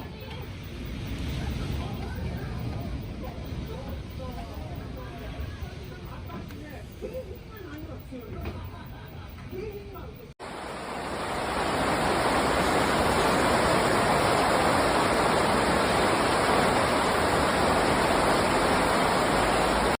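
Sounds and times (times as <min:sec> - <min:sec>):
roar of rushing water: 0:10.4 - 0:20.0.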